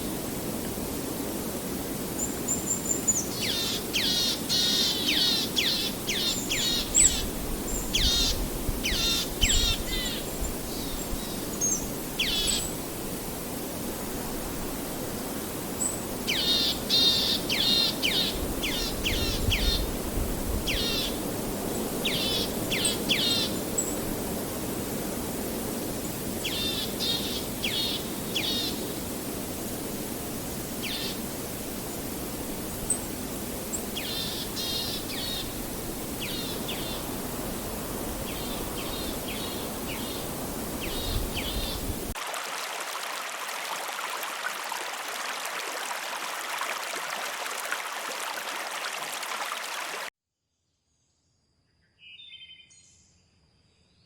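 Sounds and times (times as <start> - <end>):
river rushing: 20.6 - 50.1
songbirds chirping: 33.8 - 42.0.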